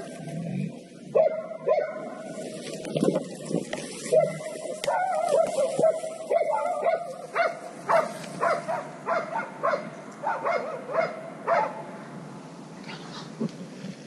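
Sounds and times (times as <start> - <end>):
dog barking rapidly: 1.2 - 2.1, 4.1 - 11.8.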